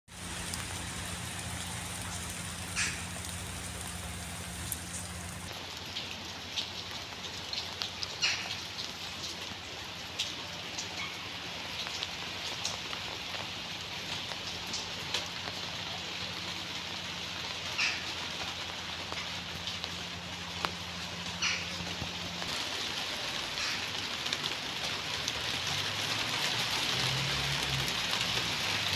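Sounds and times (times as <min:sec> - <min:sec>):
raindrops ticking on a surface: 0:00.1 - 0:28.9
steady rain hiss: 0:00.1 - 0:28.9.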